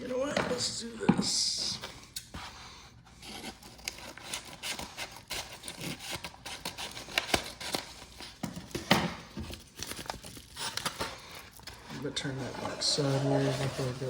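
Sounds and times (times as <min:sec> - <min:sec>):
objects rubbing and scraping on desk: 0:11.8 - 0:14.0.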